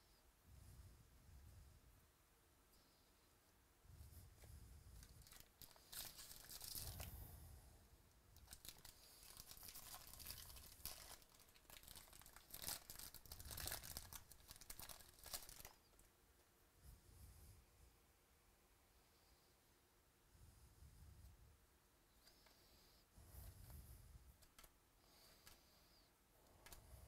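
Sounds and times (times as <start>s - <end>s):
wrapper tearing and crinkling: 5.1s - 7.0s, 8.4s - 15.8s.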